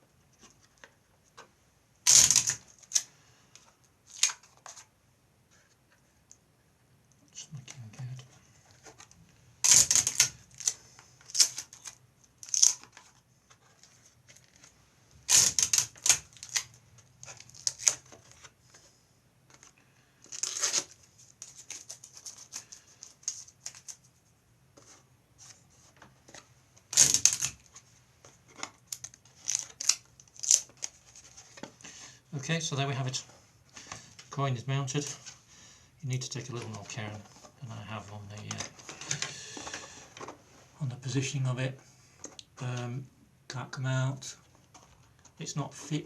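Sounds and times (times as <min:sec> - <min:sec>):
tape ripping: 0:02.0 - 0:03.1, 0:04.1 - 0:04.8, 0:09.6 - 0:13.1, 0:14.3 - 0:18.5, 0:20.2 - 0:24.0, 0:26.9 - 0:27.7, 0:28.6 - 0:31.6.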